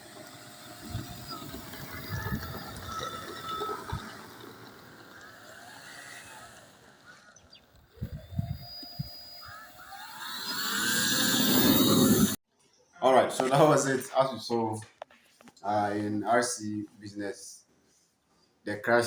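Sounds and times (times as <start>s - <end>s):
rc plane motors whining: 0.0s - 12.4s
wind rumbling on microphone: 0.7s - 5.5s, 7.7s - 9.5s.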